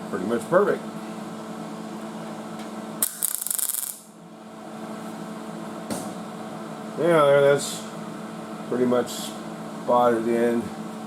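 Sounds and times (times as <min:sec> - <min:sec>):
steady hum: 0:00.0 - 0:11.0
welder crackling: 0:03.0 - 0:04.0.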